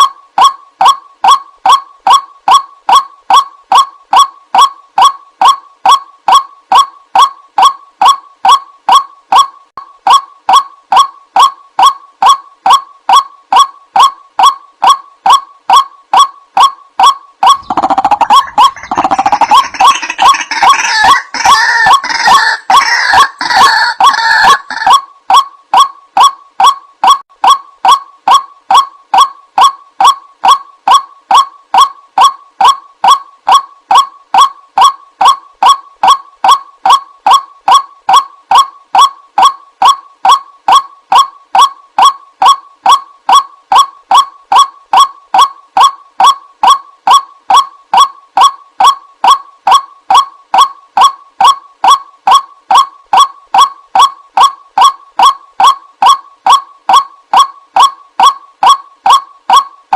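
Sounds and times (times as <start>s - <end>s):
waterhen honking call: 17.0s - 25.0s.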